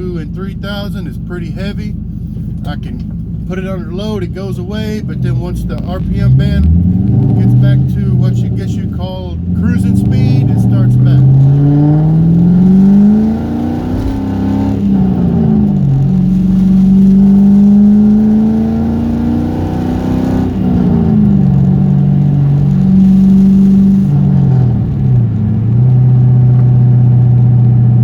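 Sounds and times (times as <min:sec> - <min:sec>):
light tapping engine rattle: 0:00.0 - 0:19.0
car engine running: 0:00.0 - 0:28.0.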